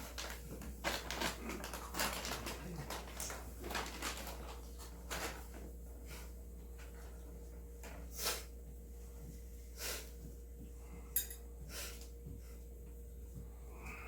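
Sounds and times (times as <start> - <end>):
steady low hum: 4.5 - 14.0
dishes and utensils clattering: 11.2 - 11.4.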